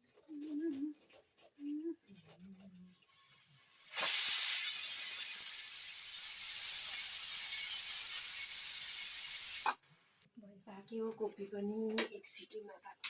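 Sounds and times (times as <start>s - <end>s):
pressure cooker whistle: 3.9s - 9.8s.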